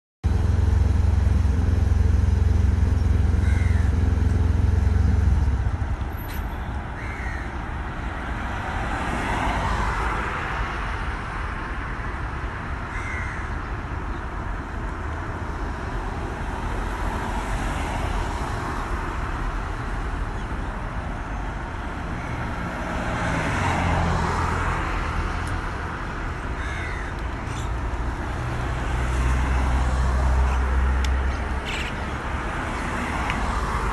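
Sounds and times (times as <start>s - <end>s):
steady traffic noise: 0.2s - 33.9s
birds calling: 2.9s - 4.4s, 6.1s - 7.6s, 12.9s - 14.8s, 26.4s - 33.7s.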